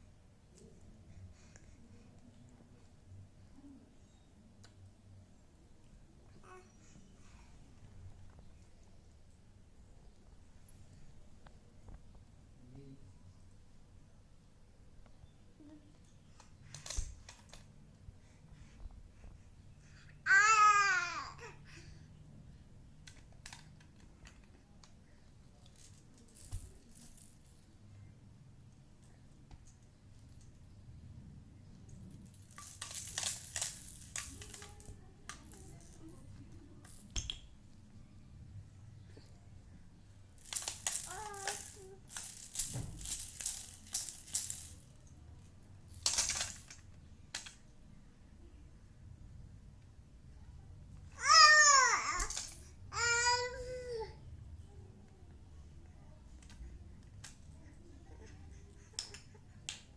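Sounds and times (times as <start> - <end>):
high baby vocal sound: 20.2 - 21.8, 41.0 - 42.0, 51.2 - 54.2
baby toy rattle shaken: 32.3 - 36.2, 40.3 - 45.1, 46.0 - 46.7, 51.2 - 53.4.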